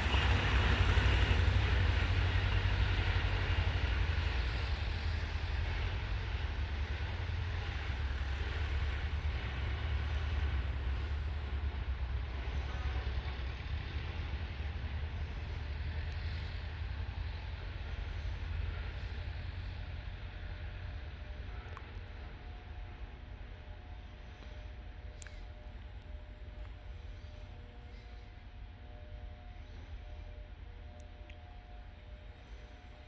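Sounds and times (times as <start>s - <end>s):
freight train rumbling past: 0.0s - 33.0s.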